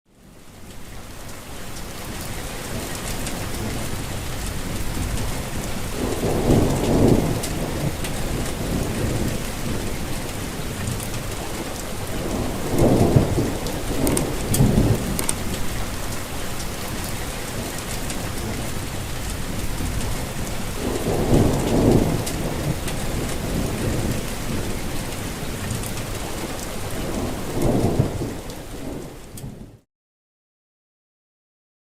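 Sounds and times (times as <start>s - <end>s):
heavy rain falling: 0.1s - 29.8s
rolls of thunder: 4.7s - 16.1s, 19.4s - 24.8s.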